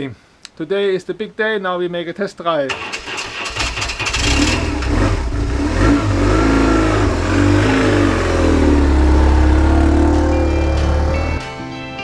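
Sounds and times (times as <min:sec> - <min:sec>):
motorcycle engine running: 0:06.5 - 0:11.4.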